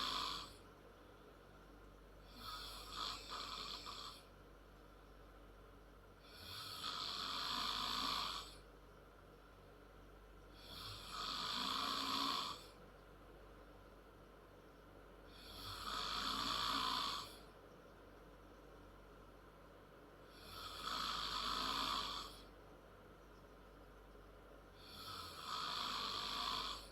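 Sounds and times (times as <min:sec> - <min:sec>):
girl snoring: 0:00.0 - 0:00.5, 0:02.3 - 0:04.3, 0:06.3 - 0:08.5, 0:10.6 - 0:12.8, 0:15.4 - 0:17.4, 0:20.3 - 0:22.5, 0:24.8 - 0:26.9.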